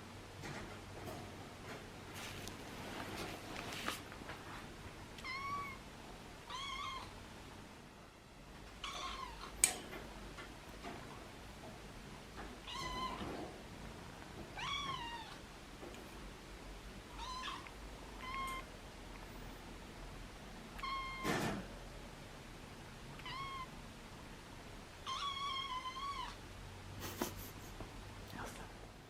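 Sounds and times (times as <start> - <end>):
kitten meowing: 5.2 - 5.8, 6.5 - 7.1, 17.2 - 18.7, 20.8 - 21.3, 23.2 - 23.7, 25.1 - 26.4.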